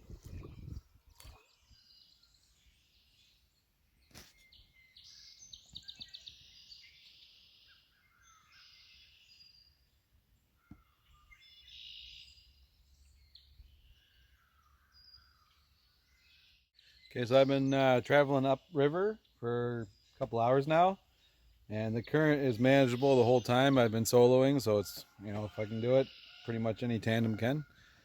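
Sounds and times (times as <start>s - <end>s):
faint songbirds singing: 0.1s - 28.0s.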